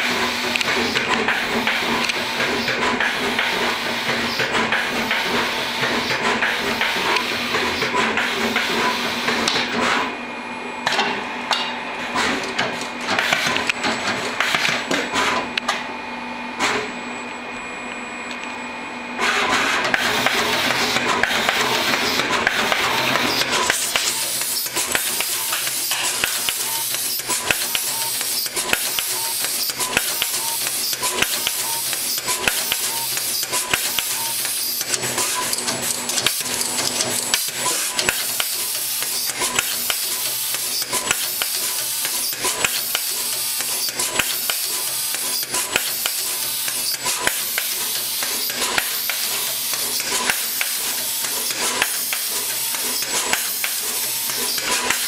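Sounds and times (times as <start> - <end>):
pneumatic hiss: 19.2 - 55.0.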